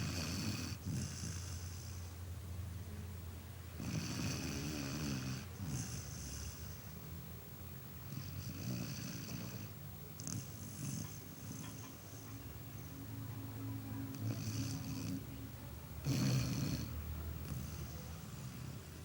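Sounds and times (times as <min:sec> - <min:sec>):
dog snoring: 0:00.0 - 0:02.2, 0:03.8 - 0:07.0, 0:08.0 - 0:12.4, 0:14.1 - 0:15.3, 0:16.0 - 0:19.0.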